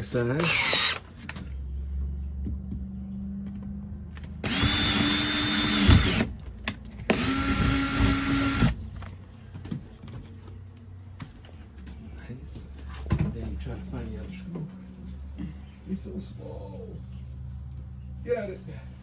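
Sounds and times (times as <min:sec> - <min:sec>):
power drill boring: 0:00.4 - 0:01.0, 0:04.4 - 0:06.3, 0:07.1 - 0:08.8.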